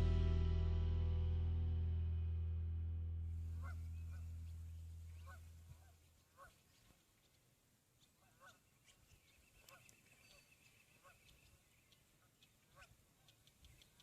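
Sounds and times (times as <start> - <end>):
background music: 0.0 - 3.0
distant geese honking: 3.4 - 7.0, 8.2 - 13.4.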